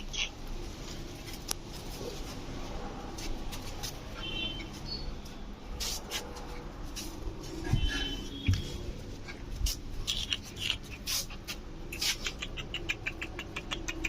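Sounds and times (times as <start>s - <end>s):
sharp clicks: 11.9s - 14.0s.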